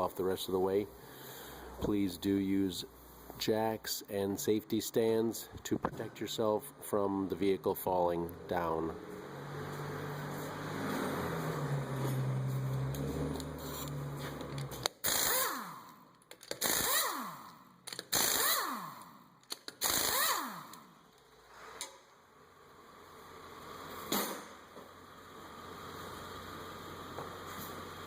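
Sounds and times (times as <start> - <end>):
impact wrench bursts: 13.6 - 21.0.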